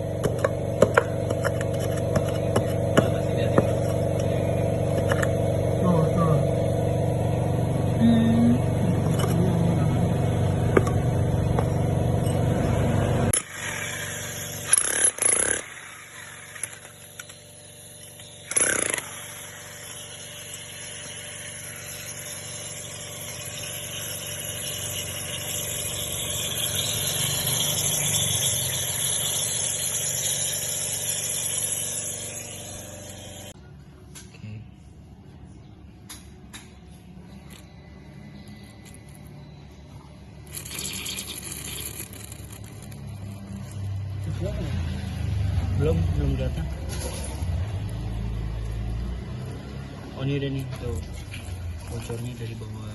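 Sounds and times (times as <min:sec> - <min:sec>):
motor running: 0:00.0 - 0:33.6, 0:37.4 - 0:52.9.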